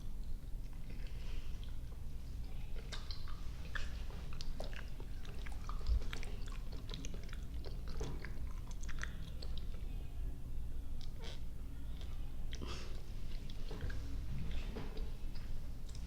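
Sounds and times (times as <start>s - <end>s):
chewing sticky candy: 0.2s - 10.0s.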